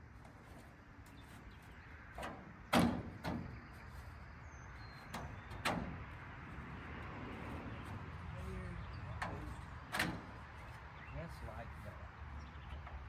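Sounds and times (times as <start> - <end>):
car body parts knocking: 2.1 - 3.9, 4.9 - 6.3, 9.1 - 10.7.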